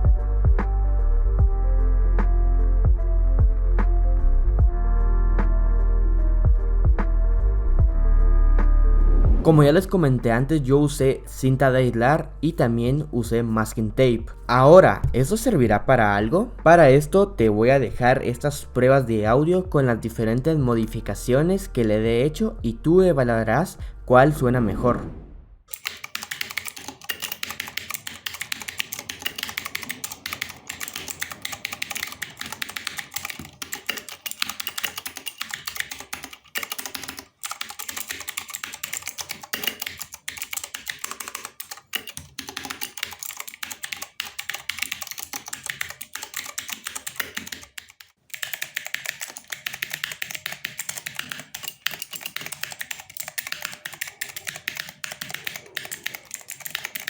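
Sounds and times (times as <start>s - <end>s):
mechanical keyboard typing: 25.7s - 57.0s.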